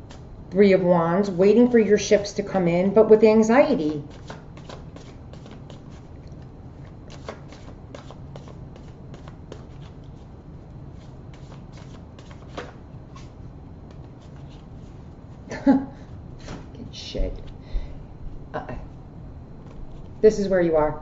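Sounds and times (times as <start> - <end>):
cards being shuffled: 3.7 - 15.4.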